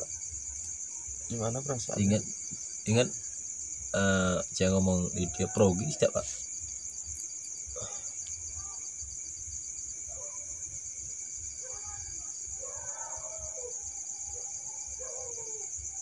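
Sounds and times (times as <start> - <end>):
crickets chirring: 0.0 - 16.0
distant wavering calls: 3.9 - 16.0.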